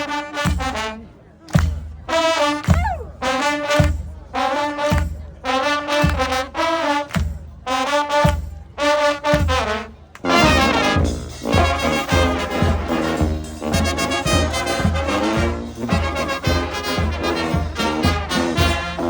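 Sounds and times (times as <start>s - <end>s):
brass band playing: 0.0s - 19.0s.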